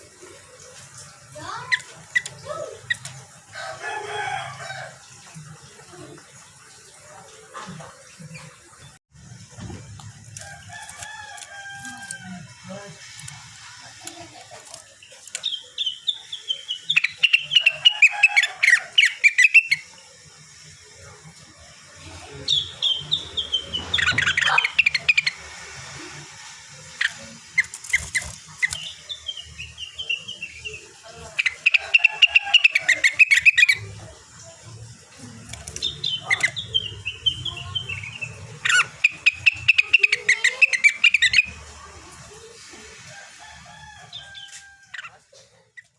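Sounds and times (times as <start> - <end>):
songbird warbling: 22.5 - 25.4, 26.9 - 33.9, 35.7 - 41.6.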